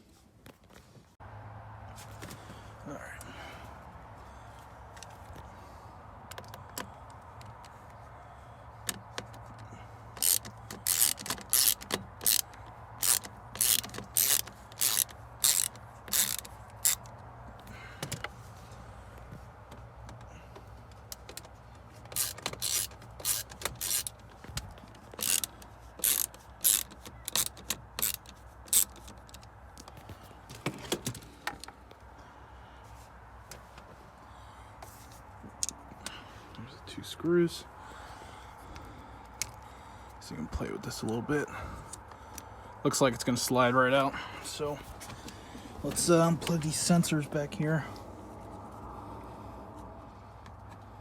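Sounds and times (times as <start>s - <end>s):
ratchet tool clicking: 10.2s - 17.2s, 22.1s - 29.5s.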